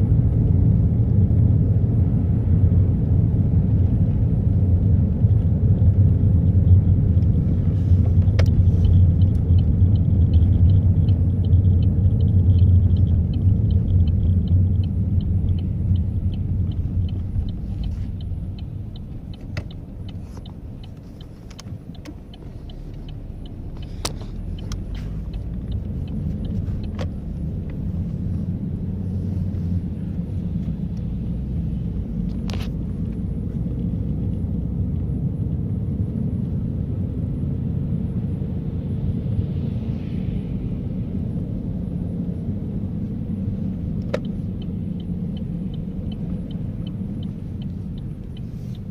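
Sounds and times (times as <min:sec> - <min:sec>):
engine and road rumble: 0:00.0 - 0:48.9
fast faint ticks: 0:08.2 - 0:28.1, 0:44.0 - 0:48.9.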